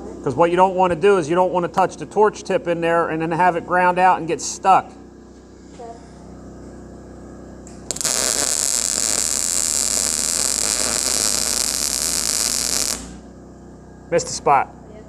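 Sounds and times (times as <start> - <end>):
low hum: 5.5 - 14.4
welding arc hissing: 7.7 - 13.3.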